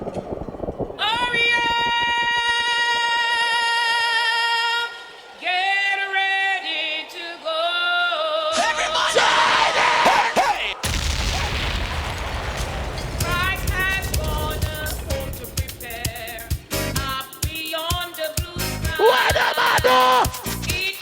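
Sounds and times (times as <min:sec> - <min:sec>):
crowd noise: 0:00.0 - 0:21.0
solo voice singing with vibrato: 0:01.0 - 0:08.7, 0:13.2 - 0:21.0.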